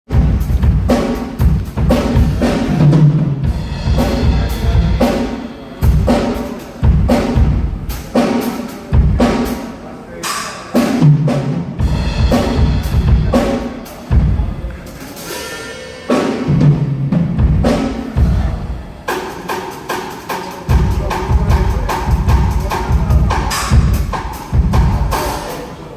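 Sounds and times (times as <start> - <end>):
low tom strikes: 0.1 - 9.7, 10.9 - 14.8, 20.7 - 25.5
drum kit playing: 0.1 - 25.9.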